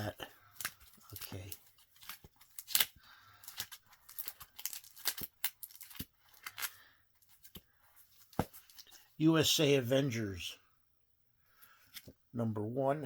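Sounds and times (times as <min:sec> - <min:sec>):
comic books rustling and crinkling: 0:00.0 - 0:09.2.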